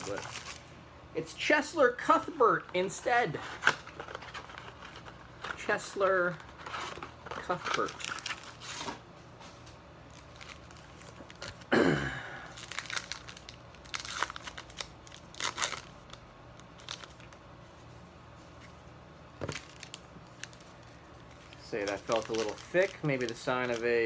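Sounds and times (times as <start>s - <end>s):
packaging ripping: 0.0s - 0.6s, 3.5s - 8.9s, 10.1s - 11.7s, 12.5s - 17.4s, 21.4s - 24.0s
wrapper crinkling and tearing: 0.0s - 0.7s, 2.7s - 8.9s, 10.1s - 11.7s, 12.5s - 17.4s, 19.4s - 24.0s.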